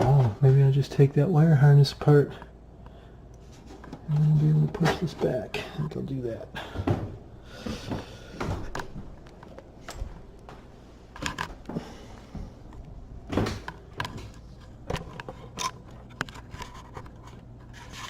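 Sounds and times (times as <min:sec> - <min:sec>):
clicks knocks and scrapes of handling: 0:13.3 - 0:18.0.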